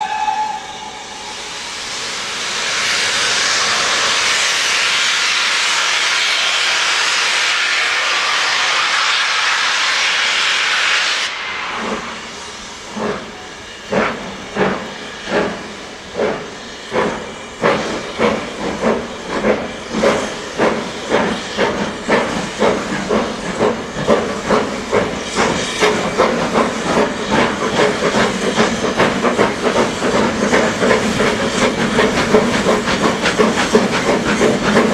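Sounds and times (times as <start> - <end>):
loud hiss of steam: 0.0 - 34.9
steam locomotive chuffing: 0.0 - 34.9.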